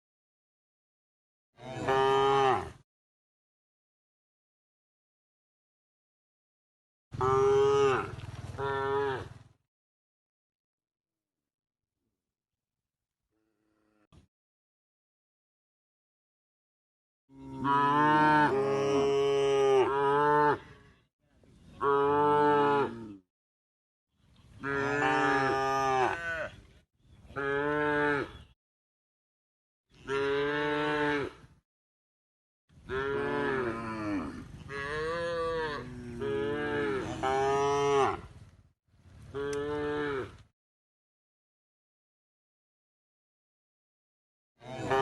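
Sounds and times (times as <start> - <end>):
cattle mooing: 1.6 - 2.8, 7.2 - 9.3, 17.3 - 20.7, 24.6 - 26.6, 32.9 - 38.3, 39.3 - 40.4.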